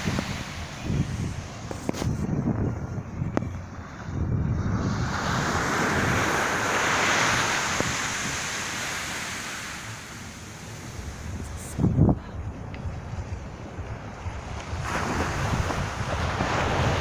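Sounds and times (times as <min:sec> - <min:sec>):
wave breaking on sand: 0:04.8 - 0:10.4, 0:14.6 - 0:17.0.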